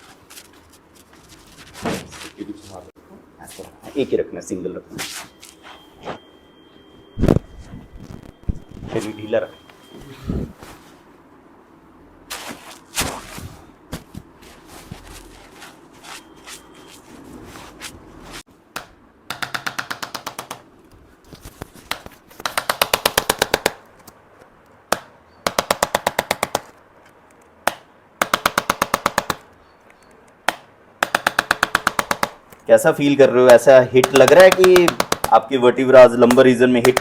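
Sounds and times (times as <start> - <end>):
rapid clicking bursts: 33.5 - 35.5.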